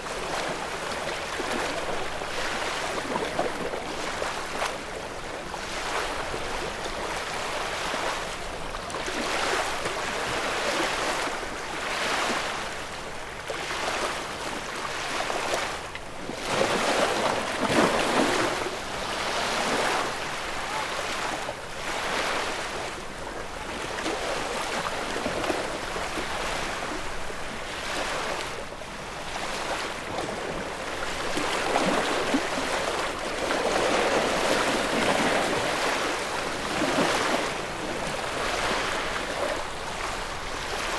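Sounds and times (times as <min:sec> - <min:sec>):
ocean waves washing onto shore: 0:13.6 - 0:40.9.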